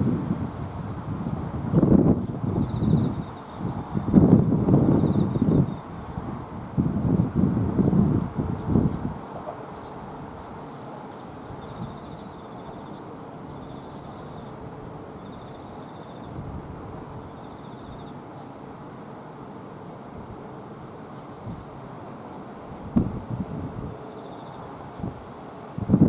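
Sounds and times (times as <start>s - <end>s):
high-pitched insect hum: 0.0s - 26.0s
insect trilled chirps: 1.6s - 18.7s.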